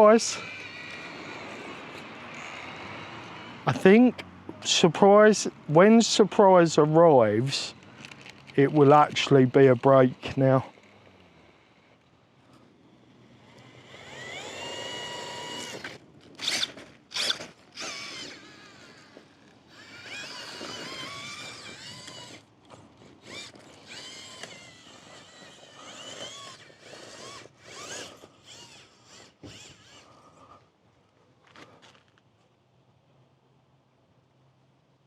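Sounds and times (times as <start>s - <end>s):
electric motor whining: 0.0s - 4.6s, 7.2s - 30.6s.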